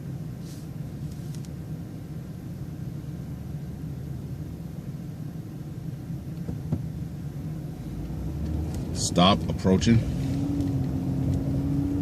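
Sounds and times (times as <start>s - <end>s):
bus engine drone with road noise: 0.0s - 12.0s.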